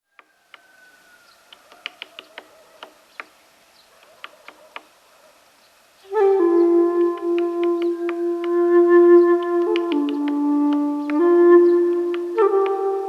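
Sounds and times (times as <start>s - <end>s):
woodpecker tapping on tree: 0.1s - 0.8s, 1.4s - 3.4s, 4.0s - 4.9s, 7.0s - 8.6s, 9.2s - 12.8s
flute-like music: 6.1s - 13.0s.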